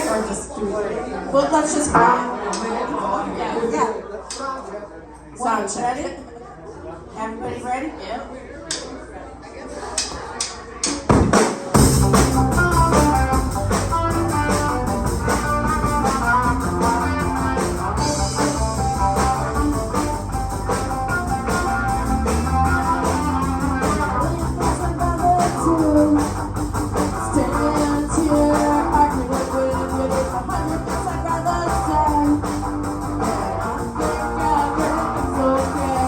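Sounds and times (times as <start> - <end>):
rock band playing: 11.1 - 36.0
electric guitar: 11.8 - 36.0.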